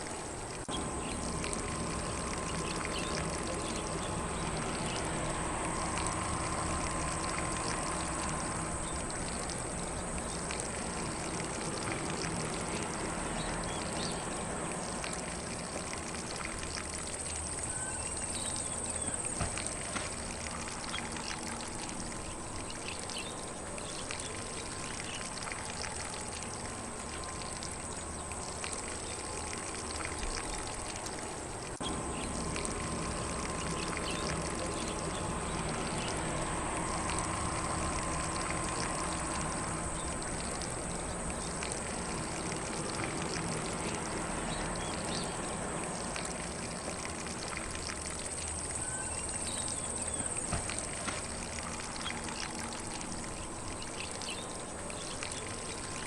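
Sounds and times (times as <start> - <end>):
faint distant birdsong: 0.0 - 56.0
lawn sprinkler hissing: 0.0 - 56.0
steady high-pitched tone: 16.3 - 22.7, 48.2 - 53.7.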